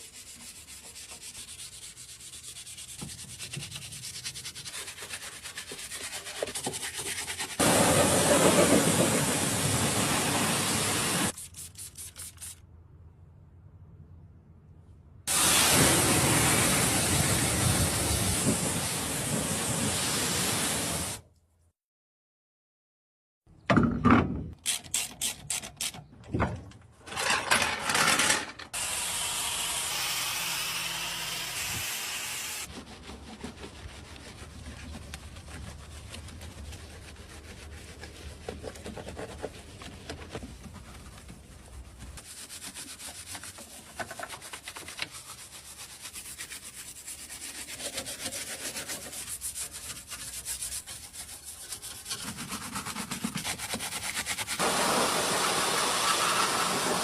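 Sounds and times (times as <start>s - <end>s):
brush scrubbing a surface: 0.0s - 12.6s, 32.6s - 57.0s.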